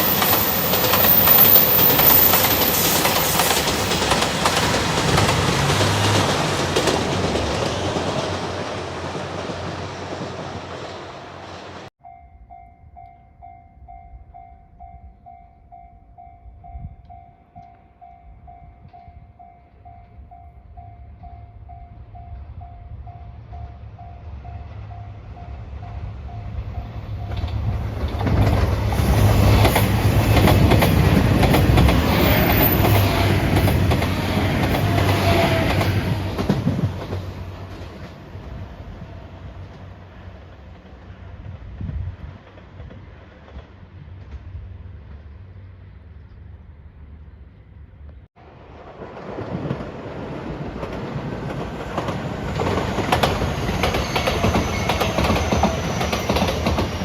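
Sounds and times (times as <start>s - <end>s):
train wheel squeal: 0.0s - 6.3s, 20.8s - 36.9s, 52.0s - 57.0s
train passing rumble: 0.0s - 57.0s.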